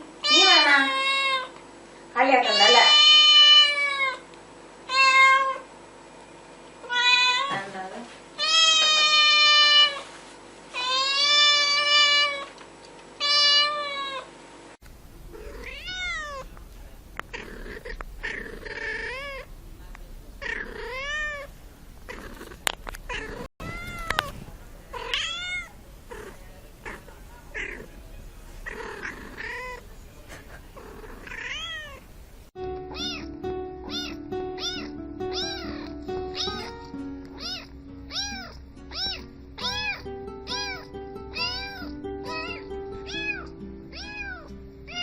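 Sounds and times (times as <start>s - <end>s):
cat meowing: 0.2s - 1.5s, 2.4s - 4.2s, 4.9s - 5.6s, 6.8s - 7.6s, 8.4s - 10.0s, 10.8s - 12.5s, 13.2s - 14.3s, 15.3s - 16.5s, 17.2s - 19.5s, 20.4s - 21.5s, 22.1s - 27.9s, 28.6s - 29.8s, 30.8s - 32.0s, 32.9s - 36.8s, 37.4s - 45.0s.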